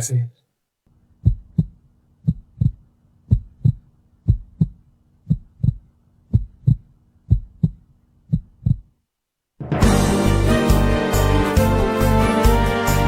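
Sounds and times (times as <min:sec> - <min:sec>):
heartbeat thumps: 0:01.2 - 0:08.9.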